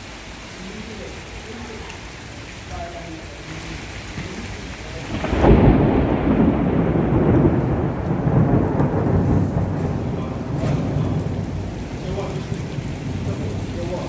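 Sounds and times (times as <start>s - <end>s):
heavy rain: 0.0s - 14.0s
thunder rumbling: 4.2s - 14.0s.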